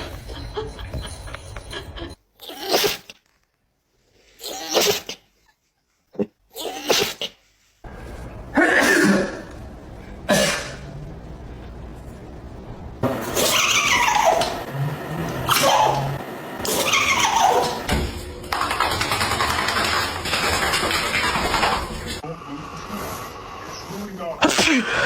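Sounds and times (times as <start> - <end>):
person sneezing: 2.4 - 3.2, 4.4 - 5.3, 6.2 - 7.4, 8.5 - 9.6, 10.3 - 10.8, 24.4 - 25.0.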